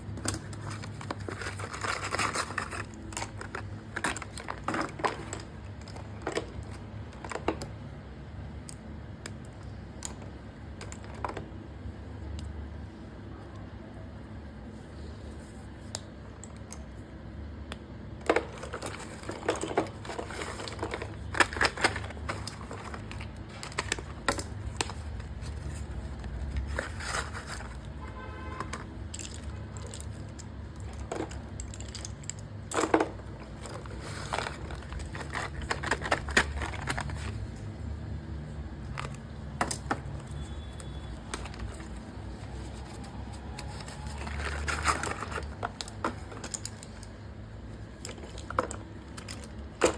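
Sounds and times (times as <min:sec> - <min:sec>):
packaging crinkling and tearing: 0:00.1 - 0:05.0, 0:40.4 - 0:47.0.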